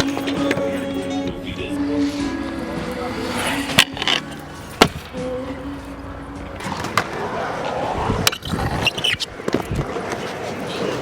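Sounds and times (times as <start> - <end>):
scooter landing clacks: 0.0 - 5.5
scooter wheels rumbling on concrete: 0.0 - 11.0.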